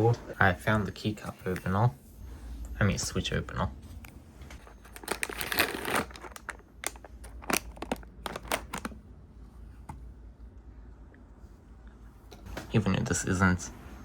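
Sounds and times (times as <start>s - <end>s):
plastic packaging crinkling: 4.6s - 9.0s.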